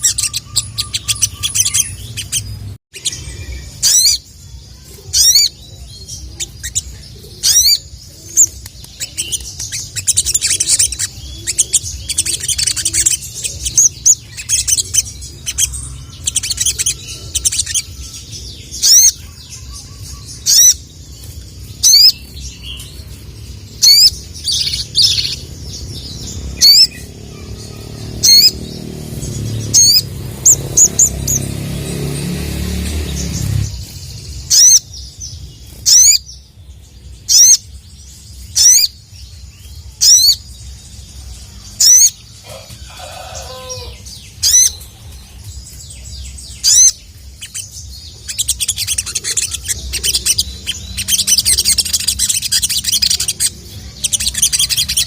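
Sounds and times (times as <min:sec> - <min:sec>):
fast high twittering: 0:00.0 - 0:05.6, 0:06.4 - 0:23.1, 0:23.7 - 0:35.1, 0:46.6 - 0:55.0
bird sharp calls: 0:00.0 - 0:23.0, 0:23.8 - 0:36.3, 0:41.7 - 0:45.4, 0:46.2 - 0:55.0.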